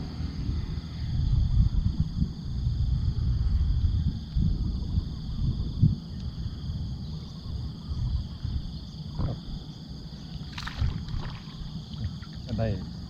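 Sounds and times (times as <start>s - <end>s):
steady high hum: 0.0s - 13.0s
knocks or splashes: 10.5s - 12.3s.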